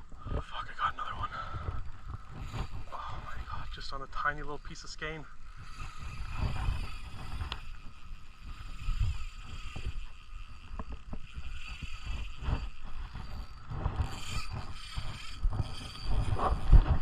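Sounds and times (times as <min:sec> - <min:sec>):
fishing reel clicking: 0:00.0 - 0:17.0
low rumbling on microphone: 0:05.3 - 0:17.0.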